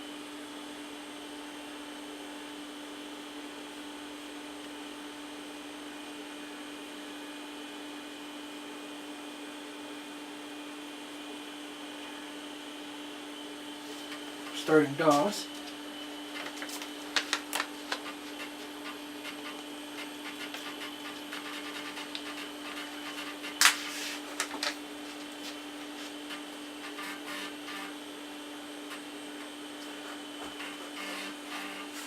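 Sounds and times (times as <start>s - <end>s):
computer humming: 13.2s - 32.0s.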